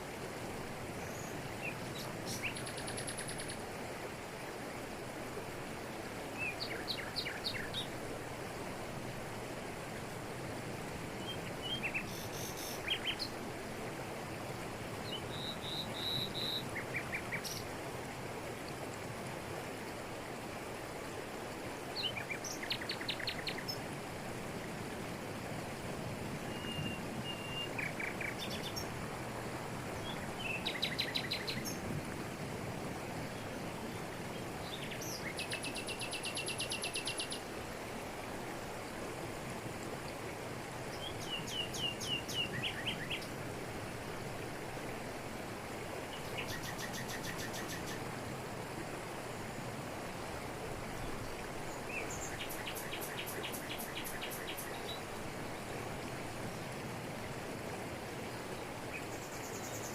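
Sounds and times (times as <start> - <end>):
waterfall pouring over rocks: 0.0 - 59.9.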